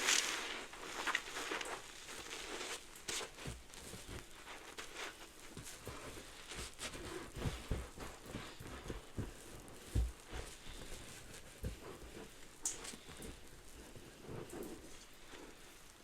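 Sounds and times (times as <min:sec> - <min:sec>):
suds crackling from squeezed sponge: 0:00.0 - 0:16.0
soft low thumps: 0:05.1 - 0:14.9.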